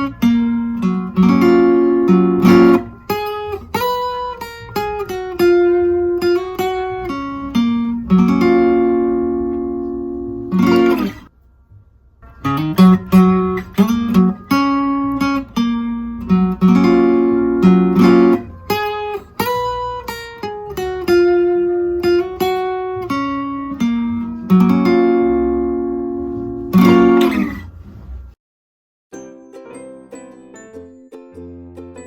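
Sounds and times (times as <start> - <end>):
acoustic guitar picking and strumming: 0.0 - 11.3, 12.2 - 28.1.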